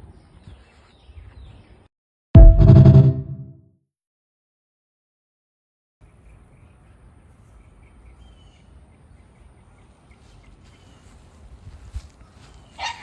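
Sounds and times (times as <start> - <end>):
low rumble: 2.4 - 3.4.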